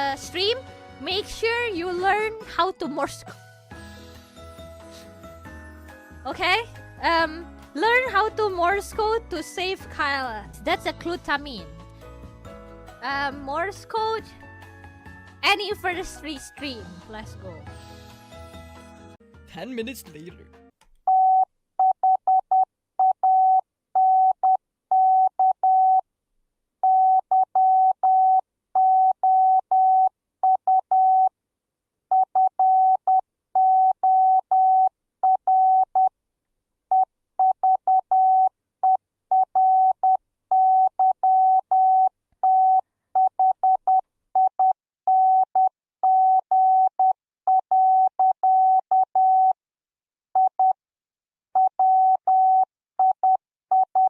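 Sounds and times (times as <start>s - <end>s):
morse code beeps: 21.1s - 26.0s, 32.1s - 36.1s, 36.9s - 49.6s, 51.6s - 54.0s.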